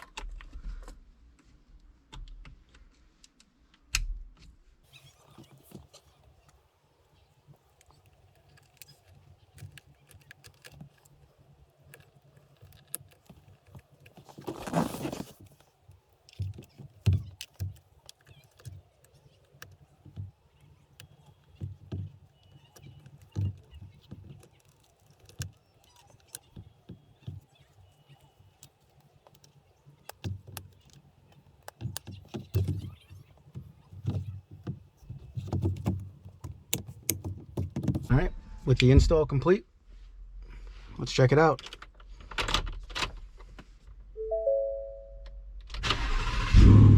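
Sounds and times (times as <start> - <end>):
light clicks and handling noises: 0.0 - 38.1
rustling scrape: 12.8 - 15.7.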